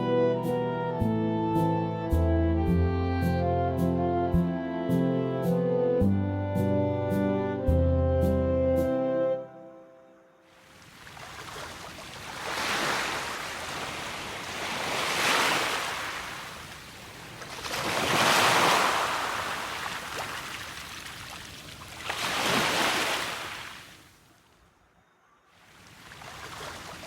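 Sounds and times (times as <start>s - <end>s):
ocean waves breaking: 10.6s - 24.1s, 25.6s - 27.0s.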